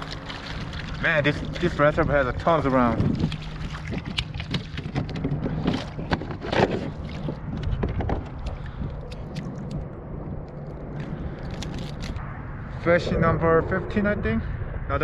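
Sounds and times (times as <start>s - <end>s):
wind buffeting microphone: 0.0s - 15.0s
fish being handled clicks: 8.2s - 10.7s.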